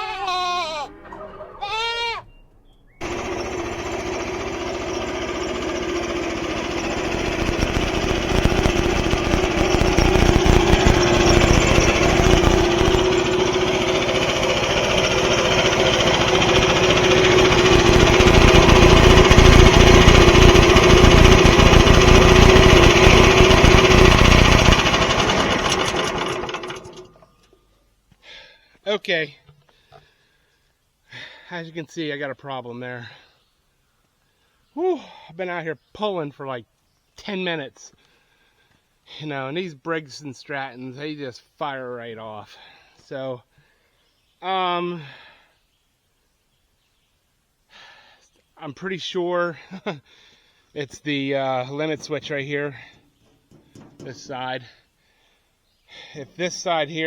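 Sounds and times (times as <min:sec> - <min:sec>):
goat bleating: 0:00.0 - 0:00.9, 0:01.6 - 0:02.2
band sawmill cutting: 0:03.0 - 0:27.2.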